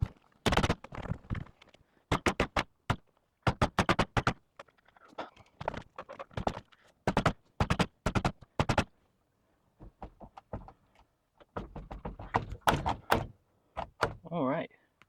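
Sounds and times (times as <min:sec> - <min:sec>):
hands knocking steering wheel: 0:09.8 - 0:10.8, 0:11.4 - 0:13.3.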